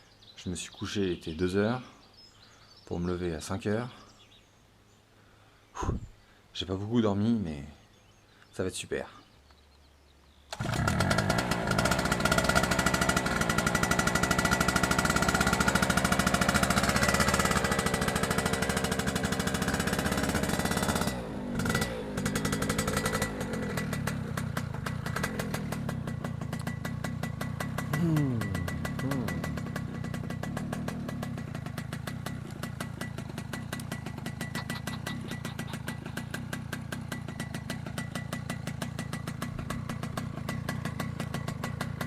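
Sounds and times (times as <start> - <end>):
small combustion engine running: 10.5 - 42.0.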